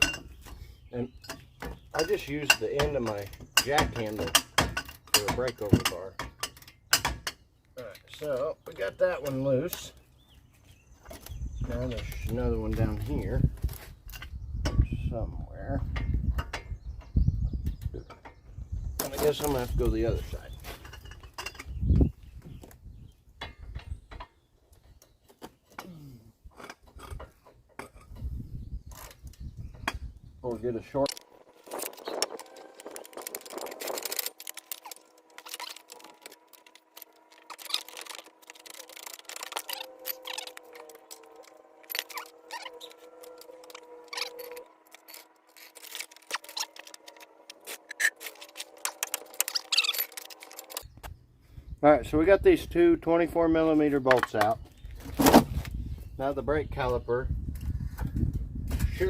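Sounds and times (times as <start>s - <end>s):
tools knocking and clicking: 1.2s - 7.4s.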